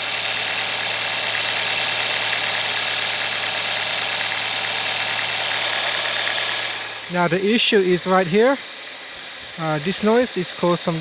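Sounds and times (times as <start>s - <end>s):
high-pitched whistle with hiss: 2.6s - 4.9s, 5.6s - 11.0s.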